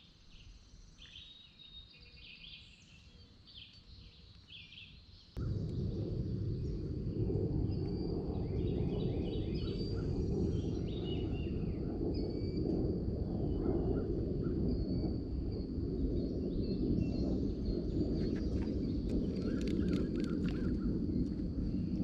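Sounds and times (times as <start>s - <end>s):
low outdoor rumble: 5.4s - 22.0s
birds chirping: 13.5s - 22.0s.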